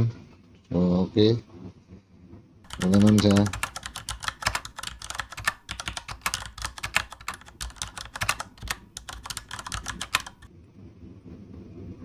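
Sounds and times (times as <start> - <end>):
typewriter key clicks: 2.7 - 10.5.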